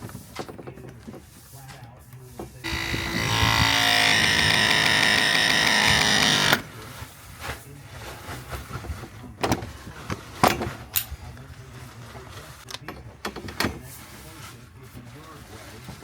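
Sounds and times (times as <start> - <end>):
power tool motor running: 2.6 - 6.6.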